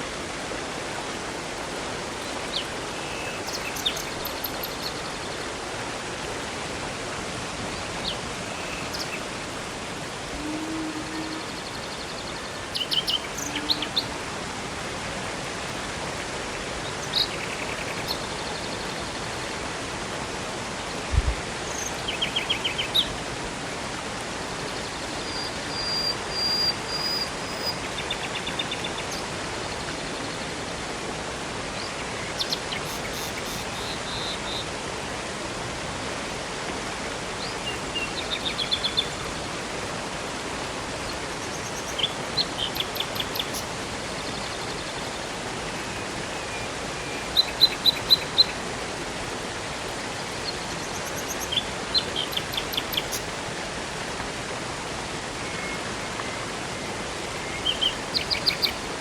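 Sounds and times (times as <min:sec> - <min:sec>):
river water rushing: 0:00.0 - 0:59.0
songbirds chirping: 0:01.5 - 0:05.6, 0:06.4 - 0:14.3, 0:31.8 - 0:34.7, 0:41.0 - 0:48.6, 0:50.0 - 0:53.4, 0:55.4 - 0:59.0.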